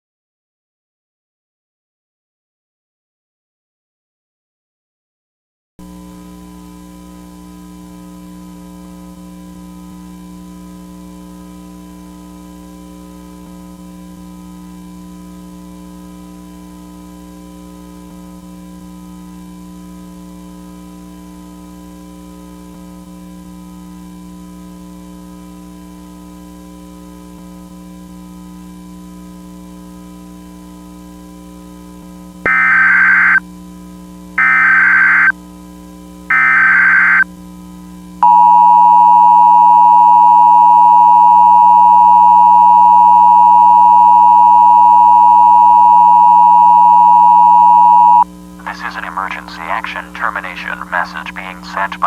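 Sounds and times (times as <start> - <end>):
electronic drone of held tones: 32.5 - 33.4, 34.4 - 35.3, 36.3 - 37.2, 38.2 - 48.2
loud alert data bursts: 32.5 - 33.4, 34.4 - 35.3, 36.3 - 37.2.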